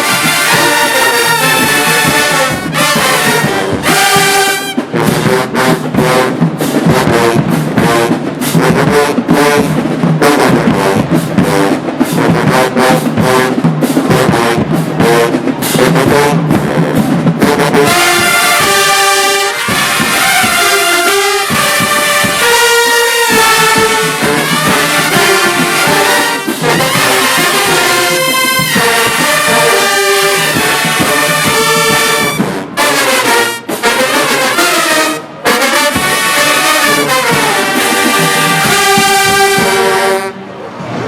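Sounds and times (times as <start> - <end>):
brass section playing chords: 0.0 - 40.8.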